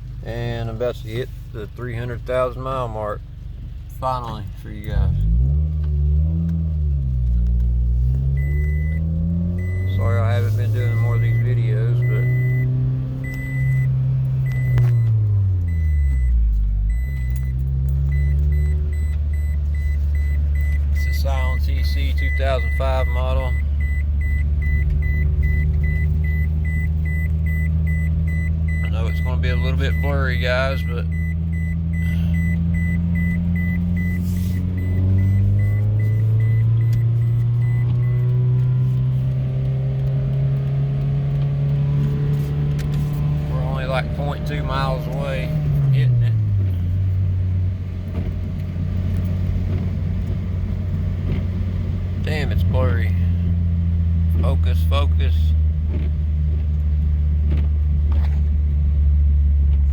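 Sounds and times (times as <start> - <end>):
car engine running: 0.0 - 59.9
high electronic beep: 8.4 - 9.0, 9.6 - 10.2, 10.8 - 38.3.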